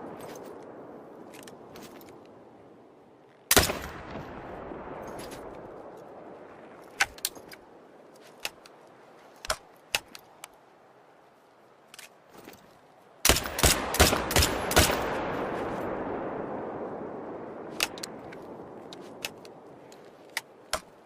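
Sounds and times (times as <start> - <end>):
rifle shots: 13.3 - 16.0.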